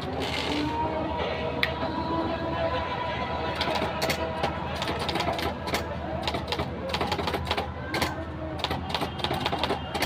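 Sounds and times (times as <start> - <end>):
manual typewriter typing: 4.8 - 10.0.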